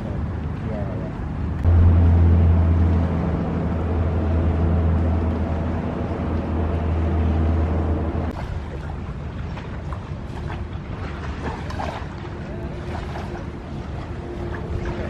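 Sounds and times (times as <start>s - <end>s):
engine running: 1.3s - 8.6s.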